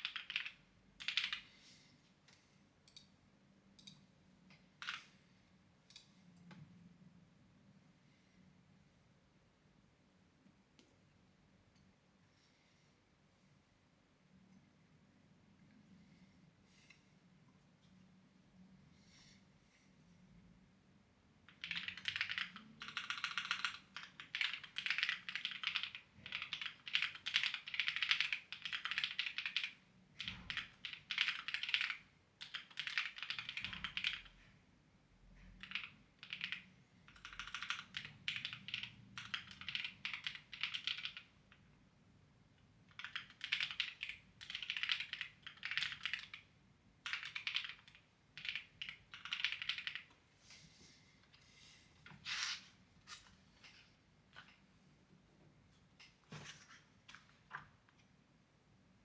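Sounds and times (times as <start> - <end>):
clacky keyboard typing: 0.0 - 1.5, 4.8 - 5.1, 21.5 - 34.4, 35.6 - 41.7, 42.9 - 50.2.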